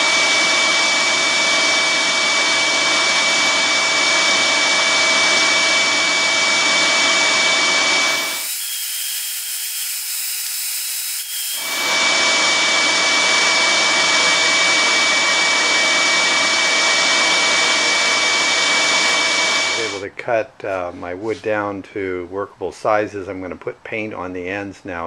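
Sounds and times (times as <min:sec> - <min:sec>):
band saw cutting wood: 0:01.6 - 0:20.0.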